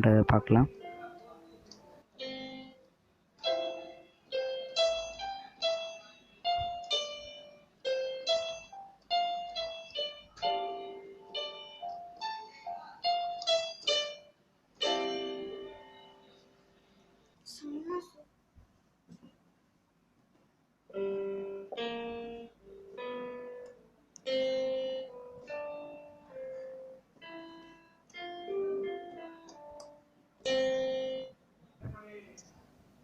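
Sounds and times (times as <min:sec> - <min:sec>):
piano-like notes and chords: 0:00.0 - 0:17.2, 0:20.9 - 0:31.4.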